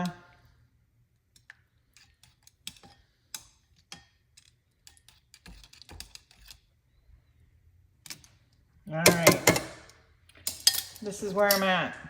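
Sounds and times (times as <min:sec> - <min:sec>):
utensils tapping pan and bowl: 0:09.0 - 0:11.8.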